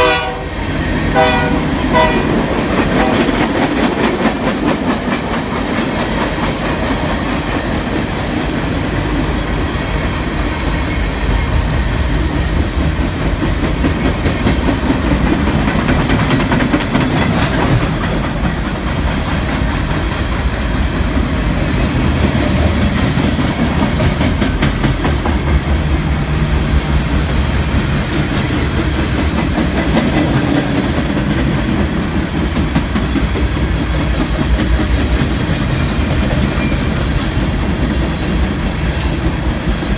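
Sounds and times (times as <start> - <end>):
freight train cars rumbling past: 0.0 - 39.9
wheels clacking over rail joints: 12.5 - 39.9.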